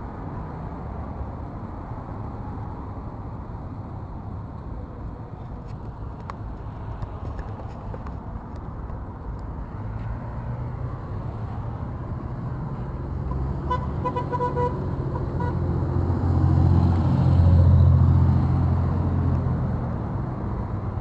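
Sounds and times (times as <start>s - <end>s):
road traffic: 0.0s - 21.0s
car horn short honks: 13.7s - 15.6s.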